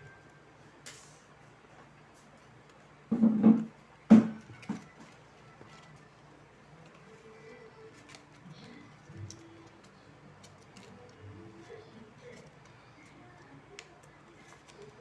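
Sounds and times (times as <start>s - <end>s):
paper clicking and tapping: 7.9s - 15.0s.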